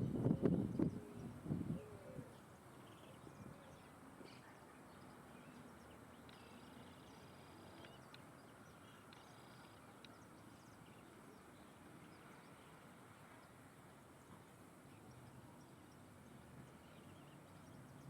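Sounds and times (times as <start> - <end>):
low outdoor hiss: 0.0 - 18.0
bird chirps: 0.3 - 12.8.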